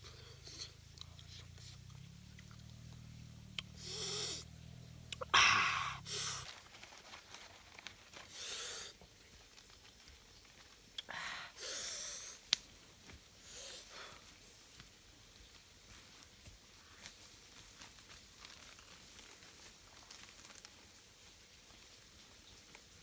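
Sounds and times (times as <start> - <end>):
small mouth clicks: 0.5 - 4.4, 5.1 - 5.4
person breathing sharply through mouth: 3.6 - 4.5, 5.2 - 6.5, 11.0 - 12.4.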